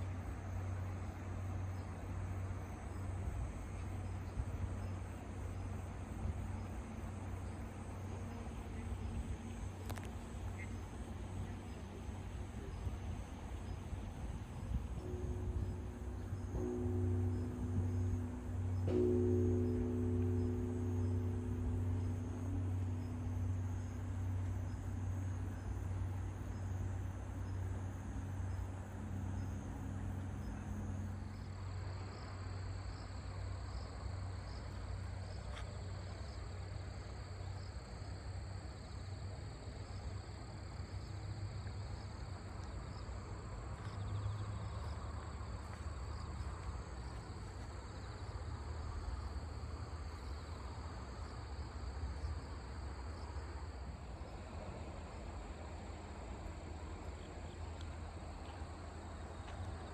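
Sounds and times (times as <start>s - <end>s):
low rumble: 0.0s - 35.4s
crickets trilling: 0.0s - 59.9s
low humming tone: 0.0s - 59.9s.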